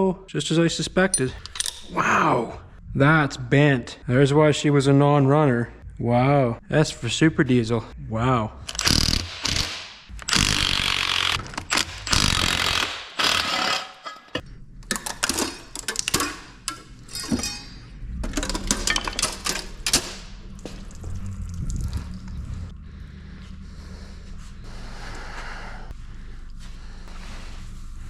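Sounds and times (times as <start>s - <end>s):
metal tools clinking: 1.1s - 1.9s, 11.6s - 20.4s
power tool bursts: 8.7s - 14.2s.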